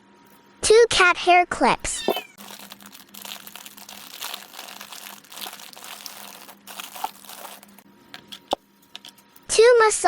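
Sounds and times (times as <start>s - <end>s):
packaging crinkling: 2.2s - 9.1s.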